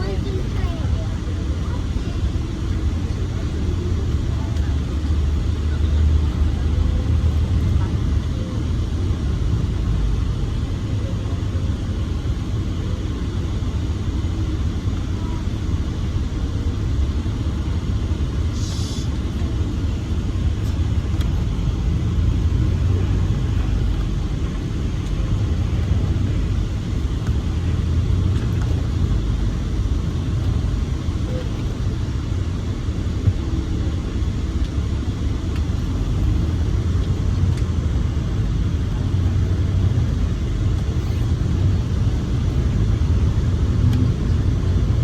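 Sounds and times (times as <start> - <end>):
bus rumbling inside cabin: 0.0 - 45.0
brief air hiss: 18.5 - 19.2.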